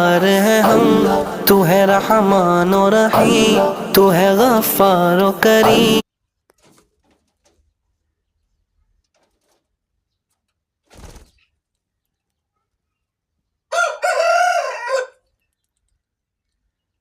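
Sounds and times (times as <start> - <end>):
rooster crowing: 13.7 - 15.2.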